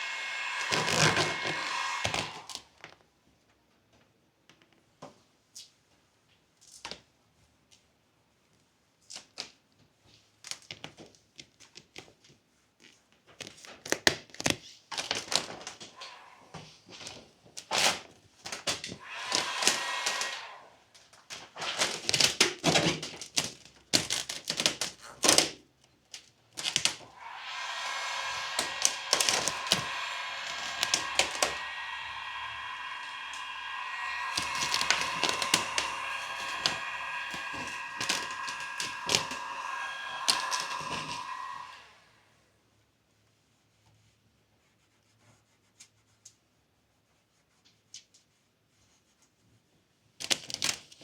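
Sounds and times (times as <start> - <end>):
steady whirring: 0.0 - 2.6, 27.0 - 42.2.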